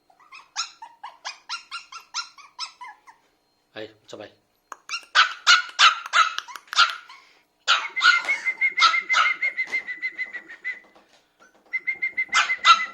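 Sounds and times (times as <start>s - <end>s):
puppy yapping: 0.1s - 3.2s, 4.8s - 9.9s, 11.8s - 12.9s.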